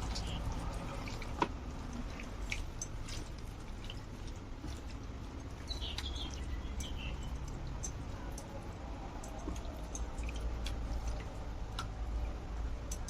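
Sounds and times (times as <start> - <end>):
bird chirping: 0.0 - 0.6, 5.6 - 7.9
low steady hum: 0.0 - 13.0.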